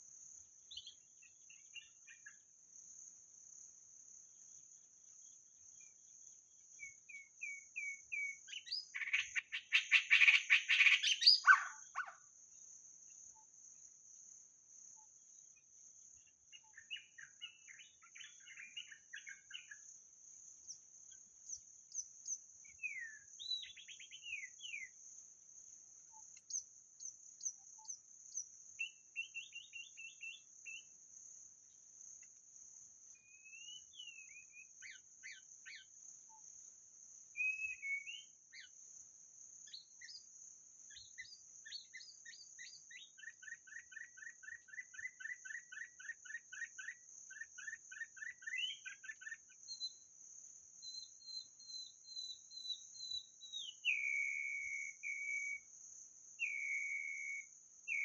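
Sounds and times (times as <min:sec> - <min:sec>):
bird song with whistles and chattering: 0:06.8 - 0:12.2, 0:22.0 - 0:24.9, 0:28.8 - 0:30.9, 0:33.3 - 0:35.9, 0:37.4 - 0:38.7, 0:41.0 - 0:50.0, 0:50.9 - 0:55.6, 0:56.4 - 0:58.0.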